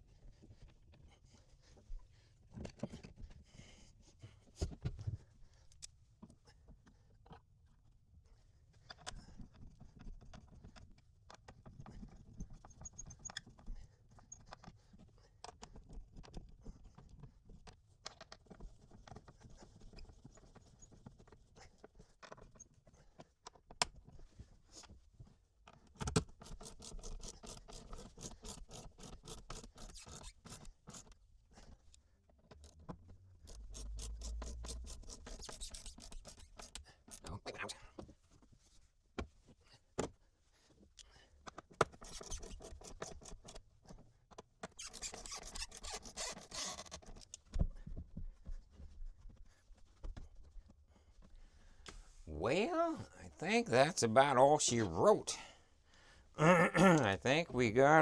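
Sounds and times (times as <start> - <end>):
hardware scraping and handling: 26.3 - 37.4, 41.8 - 44.0, 44.6 - 47.4.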